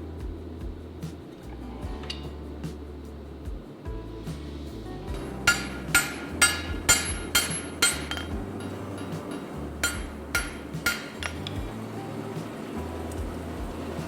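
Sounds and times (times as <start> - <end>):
hammer striking steel: 5.4 - 11.6.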